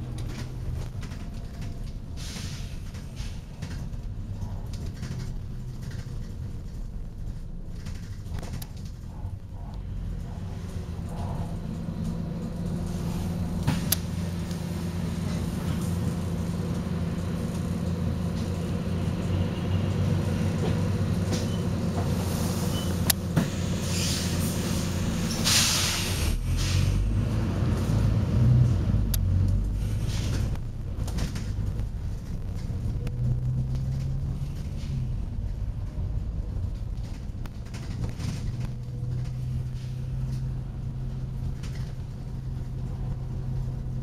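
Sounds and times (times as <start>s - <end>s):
bus engine idling: 0.0s - 27.1s, 27.8s - 44.0s
air brake hiss: 2.2s - 3.4s, 23.4s - 26.9s.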